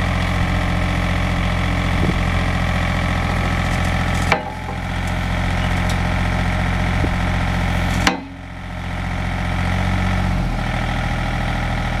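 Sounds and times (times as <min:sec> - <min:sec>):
diesel engine running: 0:00.0 - 0:12.0
sharp clunk: 0:08.0 - 0:08.4.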